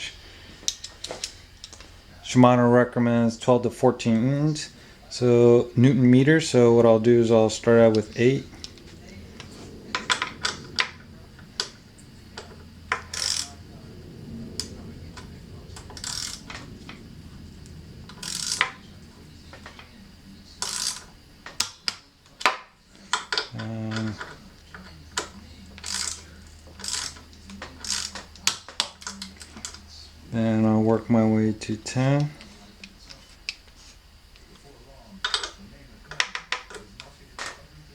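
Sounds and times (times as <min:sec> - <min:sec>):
torque wrench ratcheting: 0:12.4 - 0:13.6, 0:15.8 - 0:16.6, 0:18.1 - 0:18.8, 0:20.6 - 0:22.0, 0:25.2 - 0:29.8.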